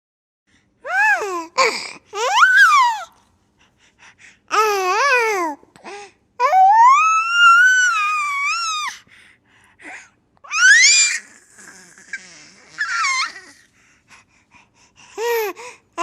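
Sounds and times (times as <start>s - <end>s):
baby squealing: 2.2s - 3.1s, 10.5s - 13.6s.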